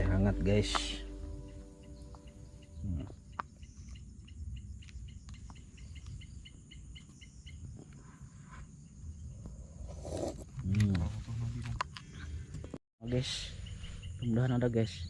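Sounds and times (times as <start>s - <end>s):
low rumble: 0.0s - 5.8s
insect chorus buzzing hum: 0.5s - 10.7s.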